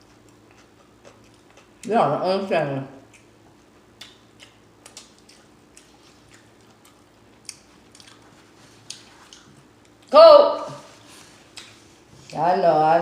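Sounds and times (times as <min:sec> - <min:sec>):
chewing with wet mouth clicks: 0:00.0 - 0:01.9, 0:03.0 - 0:10.1, 0:11.5 - 0:12.4.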